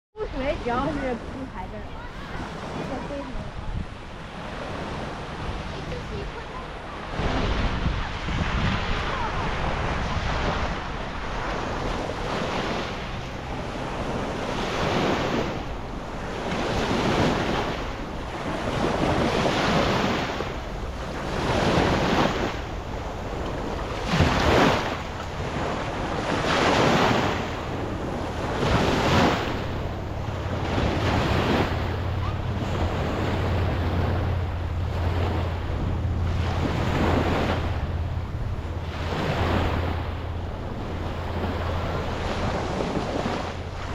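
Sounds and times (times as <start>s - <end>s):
sea waves washing in: 0.2s - 43.9s
wind buffeting microphone: 0.2s - 43.9s
low steady hum: 27.3s - 43.9s.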